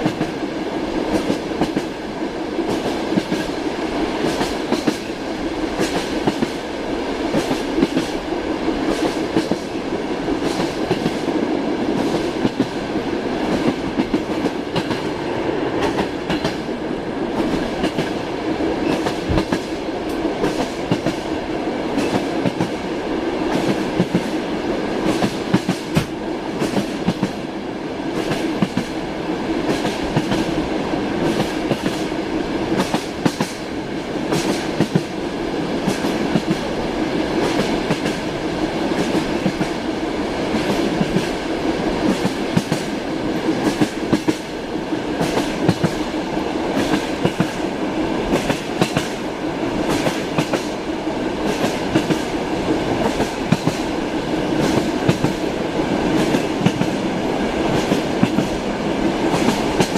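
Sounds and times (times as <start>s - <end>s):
train wheels clickety-clack: 0.0s - 59.9s.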